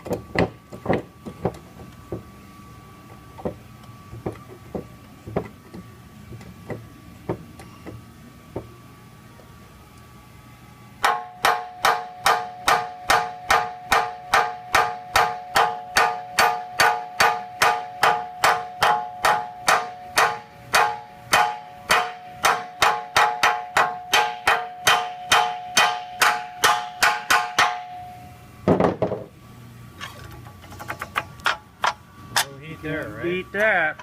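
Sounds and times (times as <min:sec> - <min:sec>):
hammer striking steel with ring: 0:11.0 - 0:28.2.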